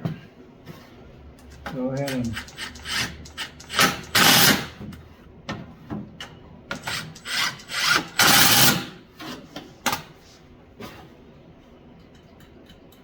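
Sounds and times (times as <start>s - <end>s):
hand ratchet rasping strokes: 1.5s - 4.8s, 6.7s - 8.9s.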